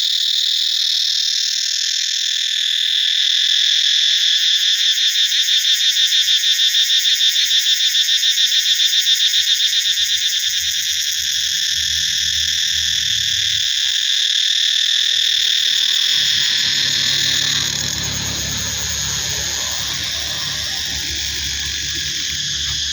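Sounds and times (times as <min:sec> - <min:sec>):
cicadas buzzing: 0:09.6 - 0:22.9
faint low rumble: 0:10.1 - 0:14.0, 0:15.1 - 0:22.9.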